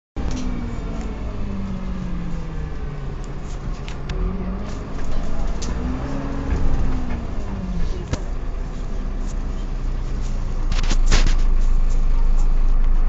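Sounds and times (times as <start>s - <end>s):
bus engine rumble: 0.2s - 13.0s
drivetrain gear whine: 0.2s - 13.0s.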